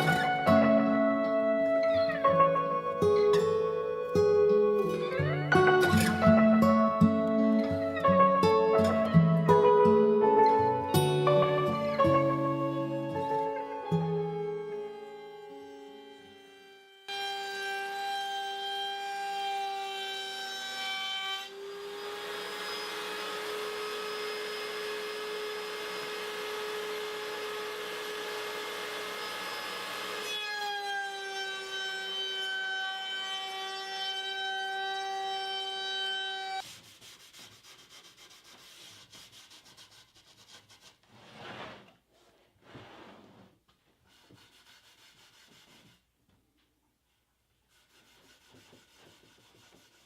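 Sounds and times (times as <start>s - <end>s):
loud cutting of wood: 0.0s - 1.0s, 11.8s - 36.8s
woodworking machine whining: 14.1s - 36.6s
rubbing and scraping on wood: 36.6s - 46.1s, 47.1s - 50.0s.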